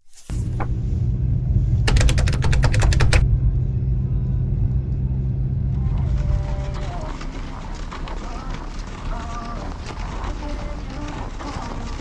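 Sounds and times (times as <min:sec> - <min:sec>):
low mechanical rumble with drone: 0:00.3 - 0:12.0
rapid sharp clicks: 0:01.9 - 0:03.2.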